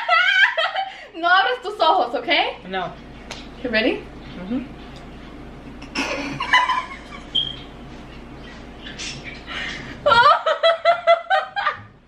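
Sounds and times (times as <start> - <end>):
woman laughing rapidly: 0.0 - 0.9, 10.0 - 11.8.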